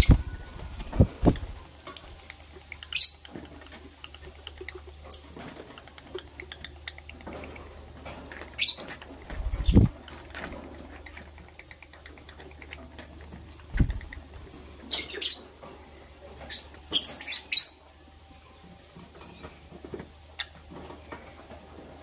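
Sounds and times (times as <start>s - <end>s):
light scratching and pattering: 0.0s - 17.2s
lovebirds chirping: 0.0s - 21.6s.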